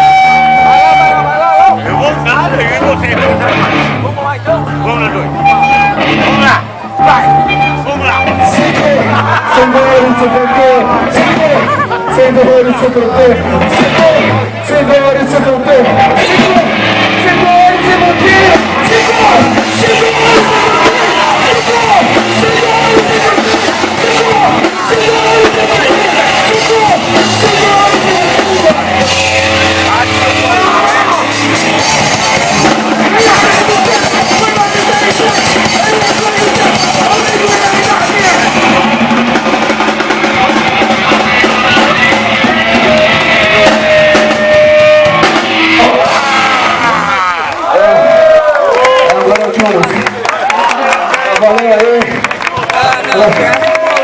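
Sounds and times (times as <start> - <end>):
punk rock band playing live: 0.0 - 48.3
distorted guitars: 0.0 - 50.1
bass: 0.0 - 54.0
drums: 0.0 - 54.0
shouted vocals: 13.4 - 52.0.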